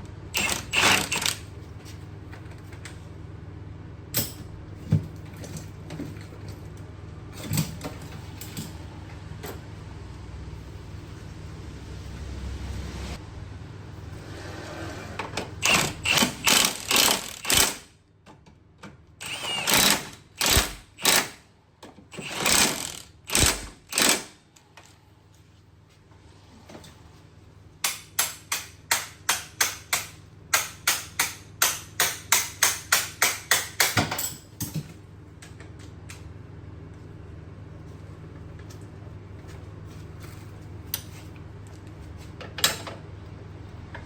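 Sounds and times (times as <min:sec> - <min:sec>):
tool striking in bursts: 0:00.4 - 0:01.4, 0:15.6 - 0:17.9, 0:19.2 - 0:21.4, 0:22.2 - 0:24.4, 0:27.8 - 0:34.3.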